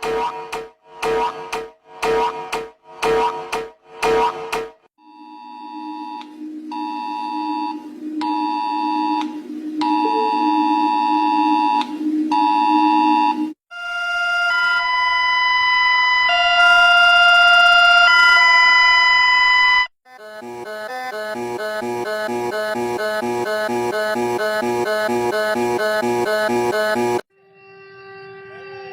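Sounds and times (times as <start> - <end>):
long alert tones shifting pitch: 0.0 - 13.5, 20.2 - 27.2
electronic alert beeps: 5.6 - 13.5.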